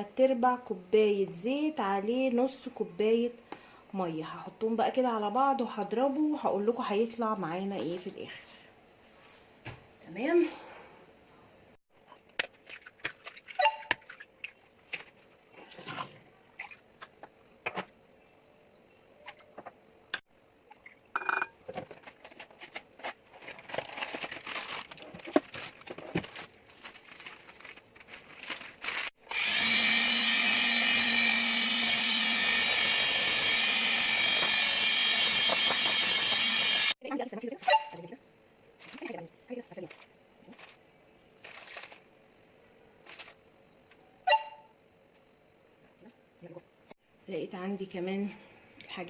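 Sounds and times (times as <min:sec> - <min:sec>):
electric mixer running: 0:29.2 - 0:37.0.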